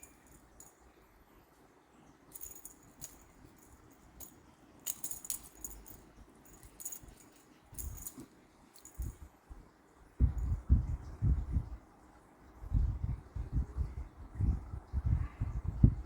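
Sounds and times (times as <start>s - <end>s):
light metallic jingling: 0.0s - 0.9s, 2.3s - 9.3s.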